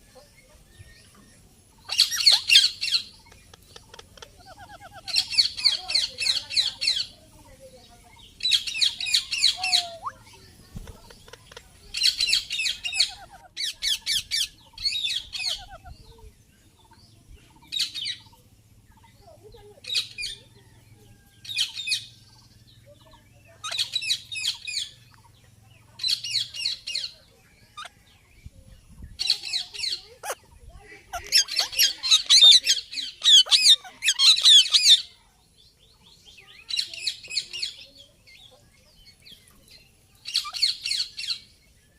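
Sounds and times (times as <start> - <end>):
parrot squawking: 1.9 - 3.1, 3.8 - 7.0, 9.0 - 10.2, 12.1 - 14.2, 15.0 - 15.9, 31.1 - 35.0.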